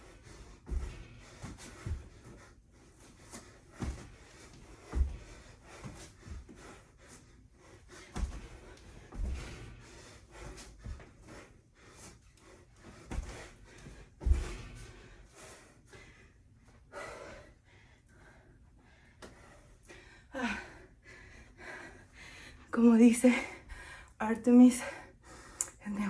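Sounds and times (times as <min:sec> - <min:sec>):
person panting: 0:00.0 - 0:24.2
hands and feet thudding on floor: 0:12.9 - 0:15.1.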